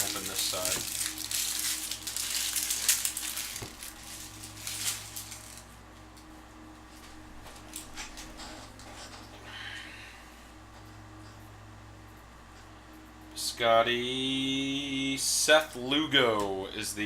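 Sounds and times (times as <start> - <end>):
foil wrapper tearing and crinkling: 0.0 - 5.7.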